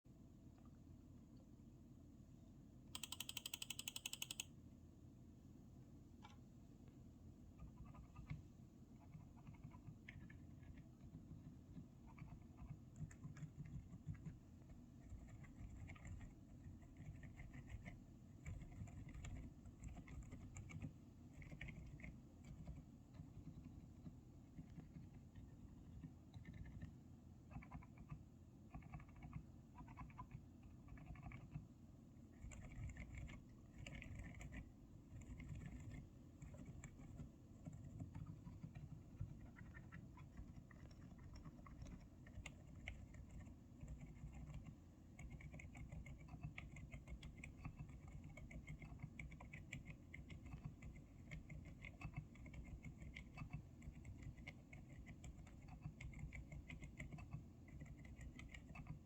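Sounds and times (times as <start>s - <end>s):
soft keyboard keystrokes: 2.9s - 4.5s, 15.0s - 16.3s, 16.9s - 26.9s, 32.4s - 59.0s.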